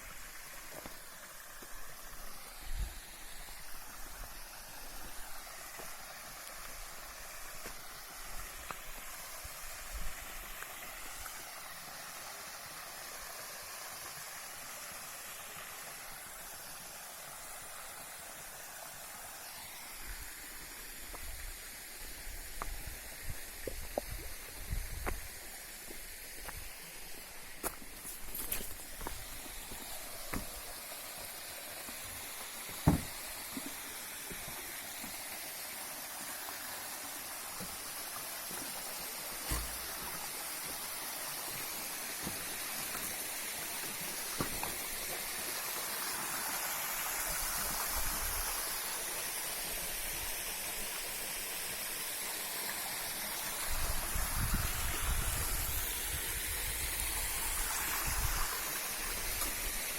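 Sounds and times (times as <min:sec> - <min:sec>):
stream rushing over rocks: 0:00.0 - 0:59.9
sharp knocks: 0:32.8 - 0:33.2.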